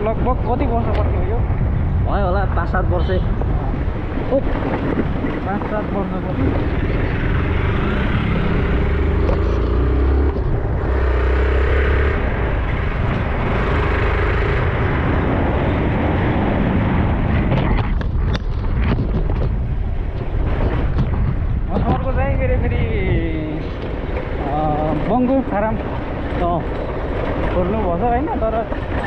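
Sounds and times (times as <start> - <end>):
wind and road noise: 0.0 - 29.0
motorcycle engine: 4.3 - 19.2.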